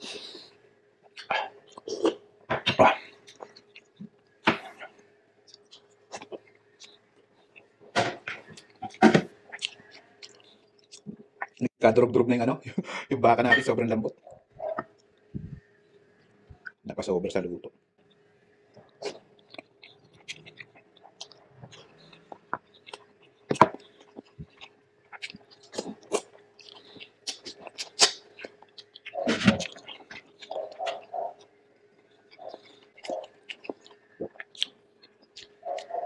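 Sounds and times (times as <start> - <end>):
wet chewing and mouth smacks: 3.2 - 11.7, 18.0 - 36.0.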